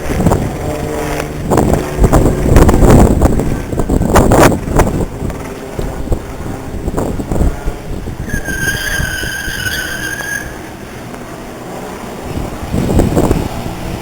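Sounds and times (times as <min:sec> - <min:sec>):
subway car rumbling: 0:00.0 - 0:14.0
metallic wheel squeal: 0:08.2 - 0:11.0.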